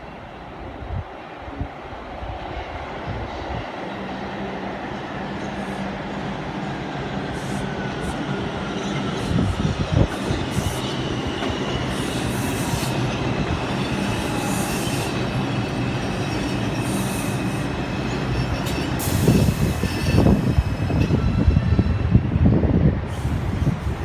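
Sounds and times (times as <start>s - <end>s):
subway train wheels rumbling: 0.0s - 24.0s.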